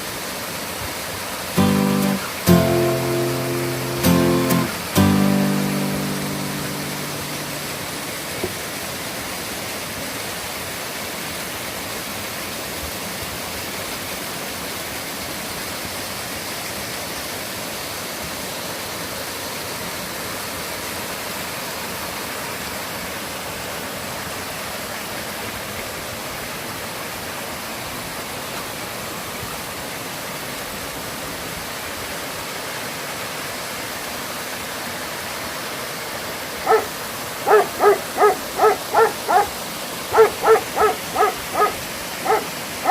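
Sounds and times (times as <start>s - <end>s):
stream rushing: 0.0s - 42.9s
short pitched yelps: 36.7s - 42.9s.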